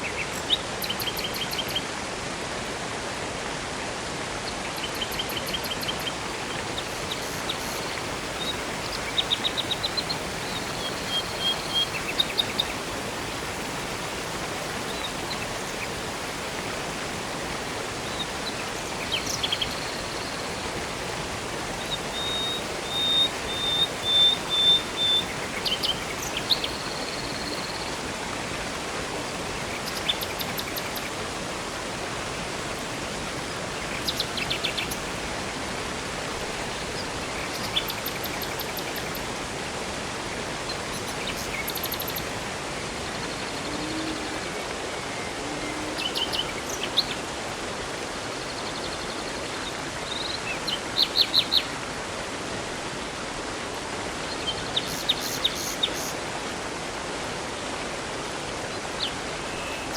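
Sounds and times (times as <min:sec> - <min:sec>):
river and waterfall rushing: 0:00.0 - 0:59.9
birds singing: 0:04.8 - 0:16.1, 0:18.0 - 0:31.2, 0:33.8 - 0:35.2, 0:36.9 - 0:39.3, 0:40.7 - 0:47.3.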